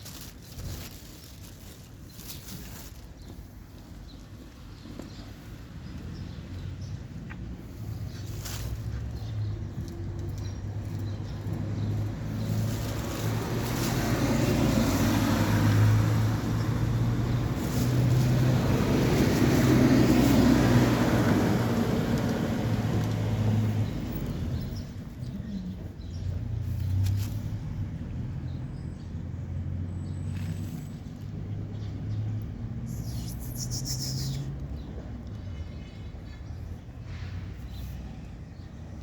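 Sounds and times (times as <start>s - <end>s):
vehicle passing: 10.9s - 24.8s.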